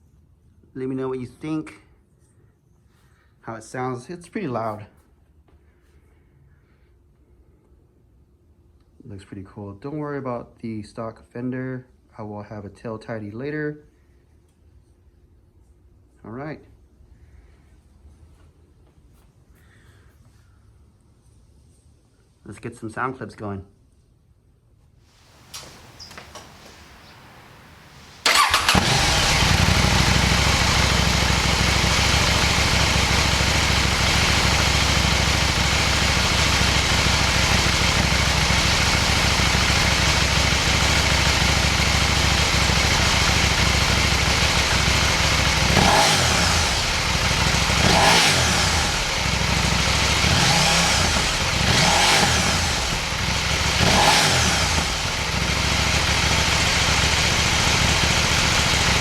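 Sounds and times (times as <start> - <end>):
motorcycle engine idling: 25.3 - 59.0
motorcycle throttle blips: 25.3 - 59.0.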